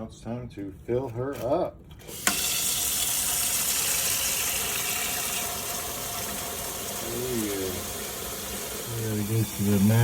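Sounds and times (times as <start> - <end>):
tap water filling a tank: 2.0 - 10.0.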